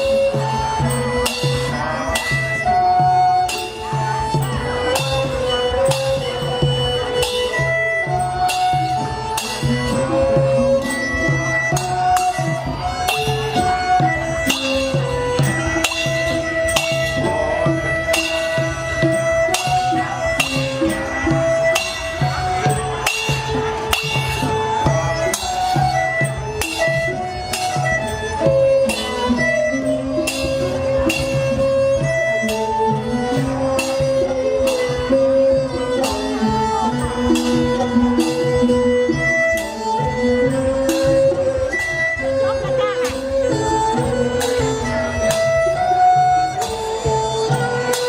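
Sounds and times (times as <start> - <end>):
low drum beat: 0.0 - 48.0
sharp percussion strikes: 0.0 - 48.0.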